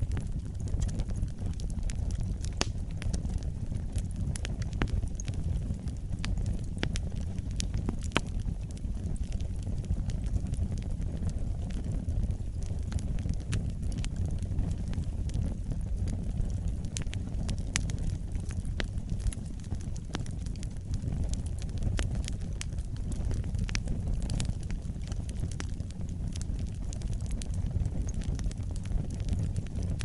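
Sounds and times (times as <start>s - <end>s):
wood fire crackling and popping: 0.0s - 30.0s.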